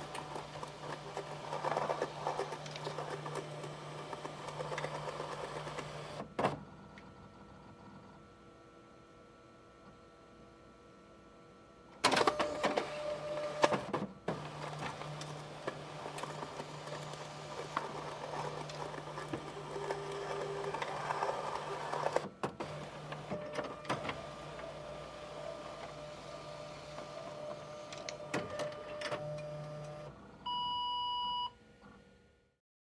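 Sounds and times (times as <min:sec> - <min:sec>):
fax machine printing: 0:00.0 - 0:06.6, 0:12.0 - 0:30.7
fax machine beep: 0:26.6 - 0:31.6.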